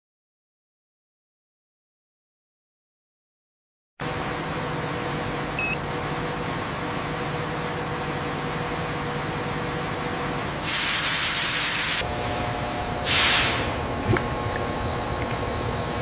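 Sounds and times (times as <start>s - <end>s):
industrial machinery humming: 4.0s - 16.0s
loud hiss of released air: 10.6s - 13.8s.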